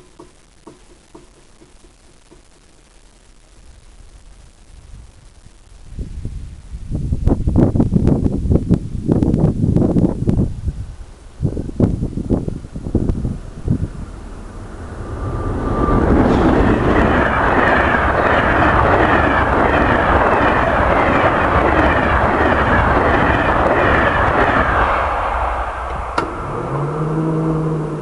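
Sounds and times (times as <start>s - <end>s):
train passing at speed: 10.9s - 28.0s.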